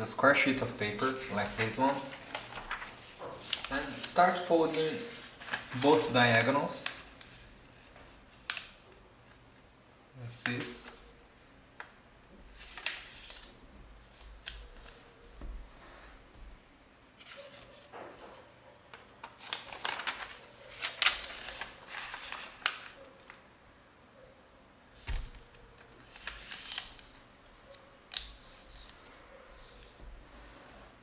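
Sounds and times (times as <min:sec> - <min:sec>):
paper rustling: 0:00.1 - 0:08.8, 0:10.3 - 0:11.2, 0:12.4 - 0:16.6, 0:17.2 - 0:23.4, 0:25.0 - 0:31.0
paper crease strokes: 0:00.4 - 0:08.0, 0:12.5 - 0:16.6, 0:19.3 - 0:23.4, 0:25.0 - 0:31.0.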